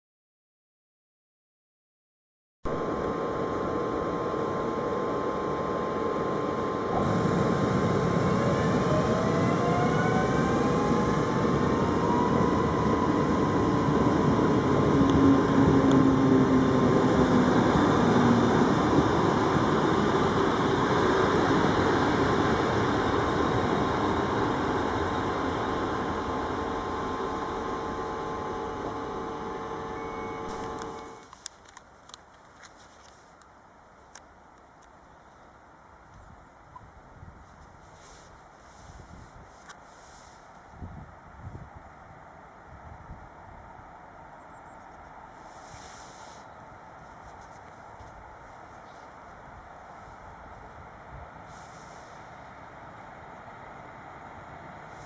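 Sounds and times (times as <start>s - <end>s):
electric train motor whine: 2.7s - 31.4s
train wheel noise: 3.7s - 32.2s.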